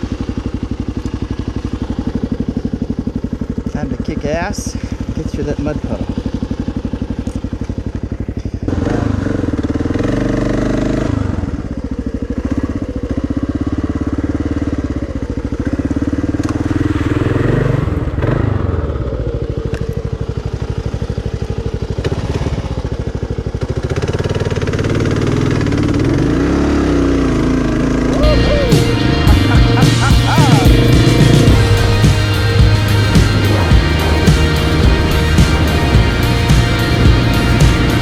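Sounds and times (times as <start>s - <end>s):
motorcycle engine revving: 0.0s - 38.0s.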